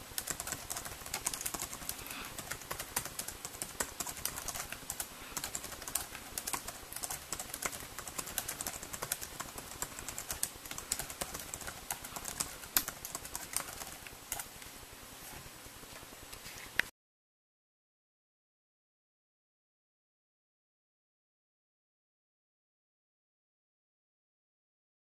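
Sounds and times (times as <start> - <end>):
fingers typing on small keyboard: 0.2 - 14.5.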